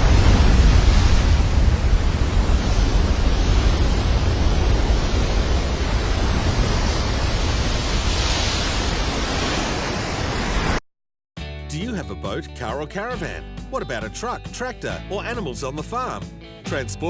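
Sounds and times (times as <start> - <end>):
wind buffeting microphone: 0.0 - 10.2
ocean surf breaking: 0.0 - 10.8.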